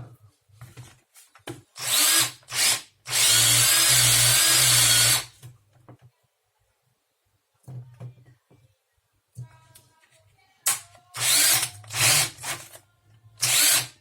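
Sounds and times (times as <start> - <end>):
cordless drill motor whining: 1.8 - 5.3, 11.2 - 12.3, 13.4 - 13.9.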